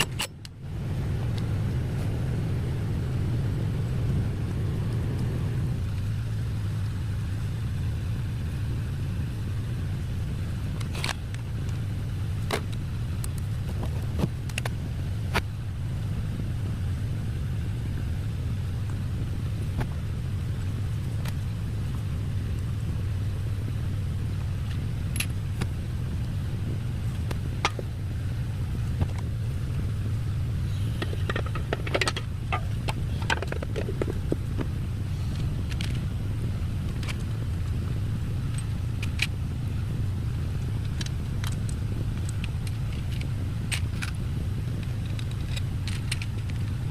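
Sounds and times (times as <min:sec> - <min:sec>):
small engine rumbling: 0:00.0 - 0:46.9
sharp clicks and rattles: 0:10.7 - 0:15.5, 0:27.0 - 0:28.0, 0:28.7 - 0:29.9, 0:30.7 - 0:36.2, 0:36.8 - 0:39.5, 0:40.4 - 0:46.9.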